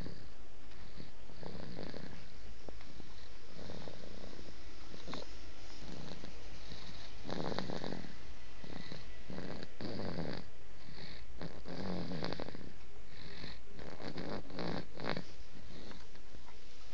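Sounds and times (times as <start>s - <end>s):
man snoring: 0.0s - 0.3s, 1.3s - 2.2s, 5.8s - 15.2s
steady low hum: 0.0s - 16.9s.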